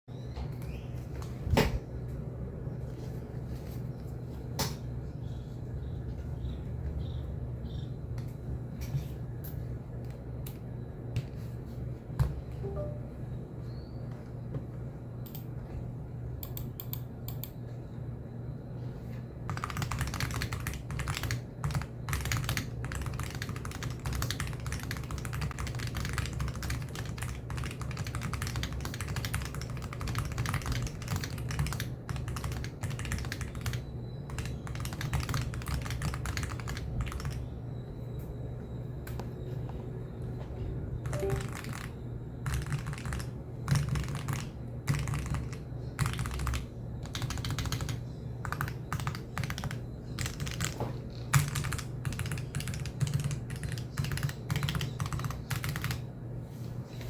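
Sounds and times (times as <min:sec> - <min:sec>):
steady low hum: 0:00.1 - 0:57.0
keyboard typing: 0:15.2 - 0:15.5, 0:16.4 - 0:17.6, 0:19.5 - 0:37.5, 0:41.0 - 0:56.1.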